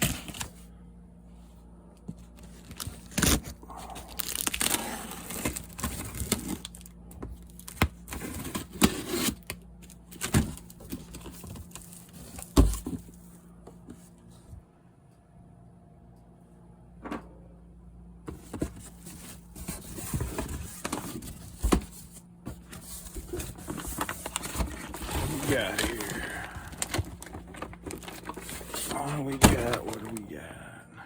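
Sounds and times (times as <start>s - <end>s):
cardboard tearing and crinkling: 0.0s - 0.5s, 2.6s - 6.9s, 7.5s - 13.1s, 18.4s - 30.3s.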